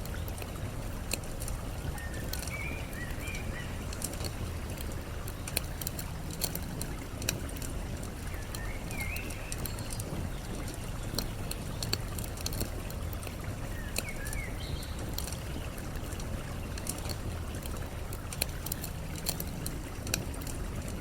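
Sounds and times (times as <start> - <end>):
campfire crackling and popping: 0.0 - 21.0
flowing water: 0.0 - 21.0
bird chirping: 2.0 - 4.1, 8.3 - 12.0, 13.6 - 15.2.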